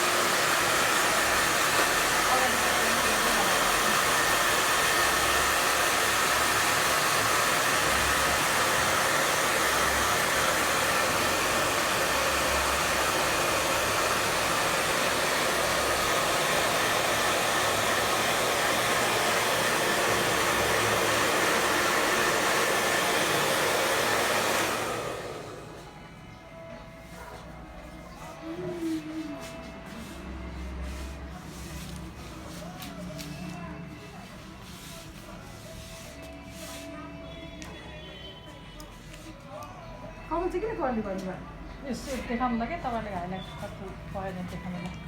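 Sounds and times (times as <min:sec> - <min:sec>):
hair dryer running: 0:00.0 - 0:25.9.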